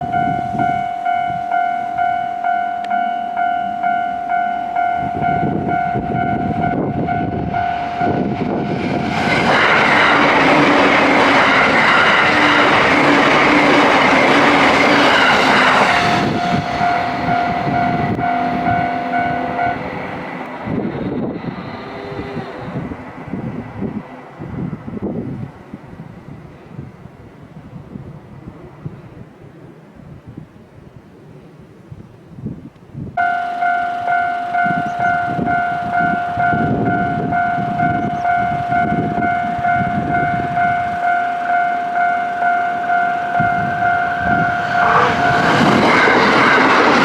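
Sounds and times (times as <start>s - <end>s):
level crossing alarm ringing: 0.0s - 21.2s, 33.2s - 47.0s
train passing at high speed: 0.0s - 47.0s.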